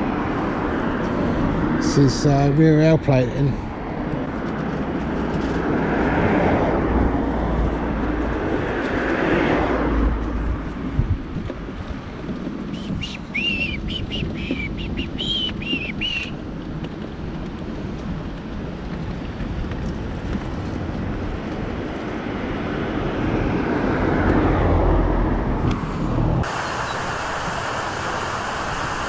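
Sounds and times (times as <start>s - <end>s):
traffic rumble: 0.0s - 29.0s
wind: 0.0s - 29.0s
small bird chirping: 12.7s - 16.4s.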